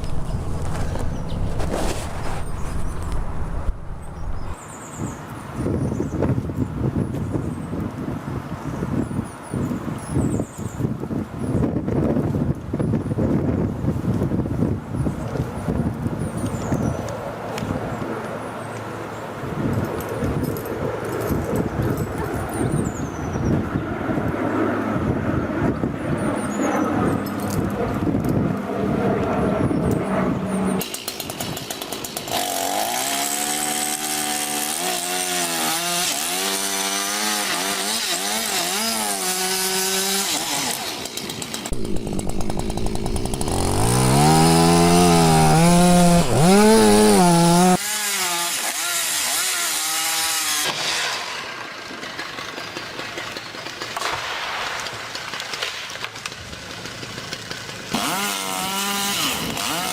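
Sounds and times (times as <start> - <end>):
chainsaw running and cutting wood: 30.8 - 53.8, 56.1 - 59.9.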